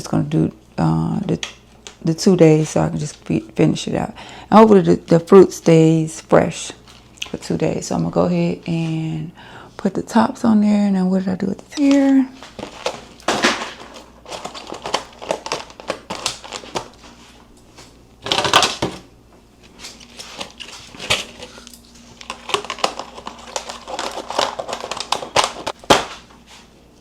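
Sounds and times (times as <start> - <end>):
plastic crinkling rustle: 12.0 - 19.0, 19.7 - 26.2.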